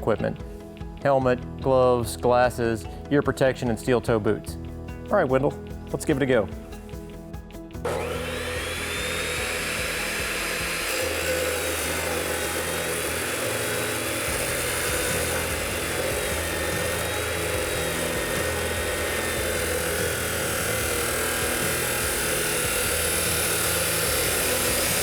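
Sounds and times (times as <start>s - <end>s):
chop saw grinding through pipe: 7.8s - 25.0s.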